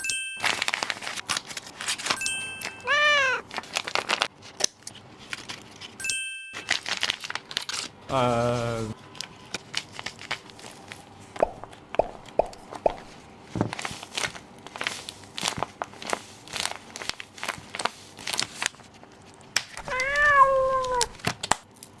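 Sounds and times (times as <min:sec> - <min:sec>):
packaging crinkling and rustling: 0:00.4 - 0:06.0, 0:06.6 - 0:08.0, 0:09.0 - 0:11.1, 0:12.6 - 0:22.0
meow-like call: 0:02.8 - 0:03.4, 0:19.8 - 0:21.2.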